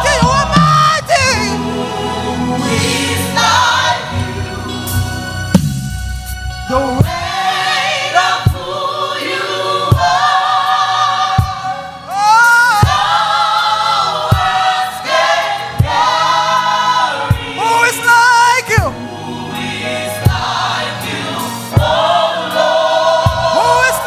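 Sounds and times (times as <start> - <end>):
gospel choir singing: 0.0 - 24.0
slow steady beat: 4.9 - 7.5, 9.9 - 10.3, 12.4 - 13.2, 14.3 - 16.2.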